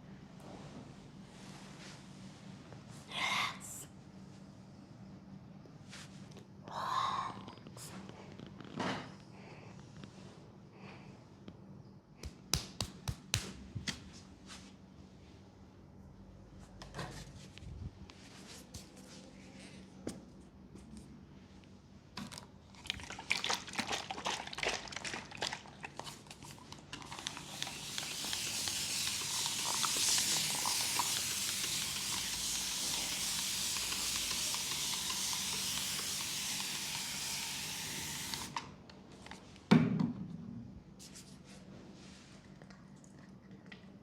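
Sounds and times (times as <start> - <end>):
spray hissing: 27.4 - 38.6.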